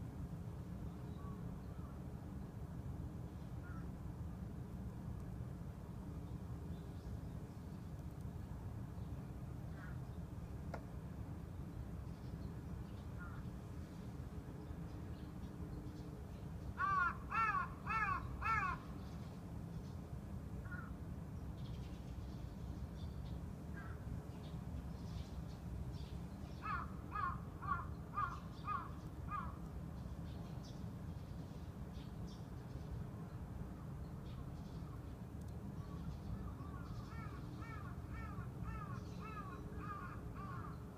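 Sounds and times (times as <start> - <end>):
crow cawing: 16.8 - 18.8, 26.6 - 29.6, 36.6 - 40.7.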